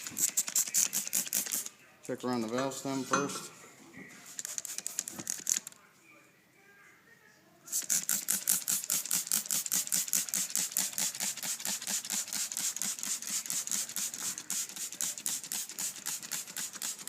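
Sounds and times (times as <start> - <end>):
spray bottle hissing: 0.0 - 1.7, 4.3 - 5.6, 7.7 - 17.0.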